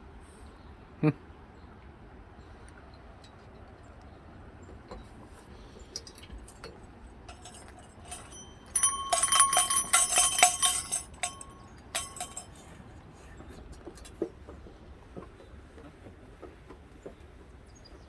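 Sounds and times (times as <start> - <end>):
small metal bells jangling: 7.3 - 12.7.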